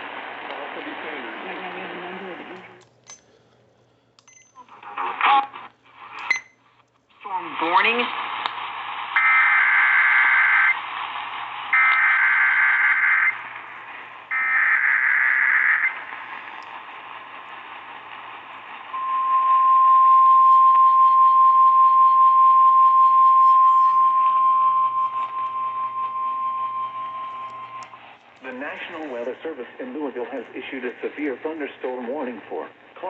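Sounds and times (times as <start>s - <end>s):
radio static: 0.0s - 2.8s, 4.7s - 6.4s, 7.1s - 19.4s, 22.8s - 33.0s
steady warning alarm tone: 9.2s - 10.8s, 11.7s - 13.4s, 14.3s - 16.0s, 18.9s - 28.0s.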